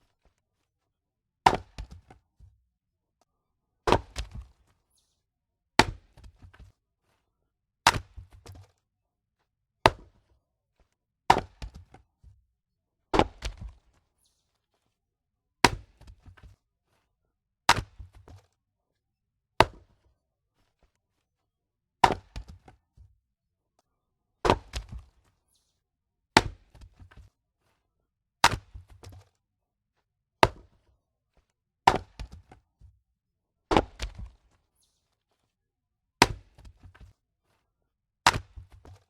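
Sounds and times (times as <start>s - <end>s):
axe splitting logs: 22.0s - 22.5s, 28.4s - 29.2s, 31.9s - 32.5s, 33.7s - 34.3s, 38.3s - 38.6s.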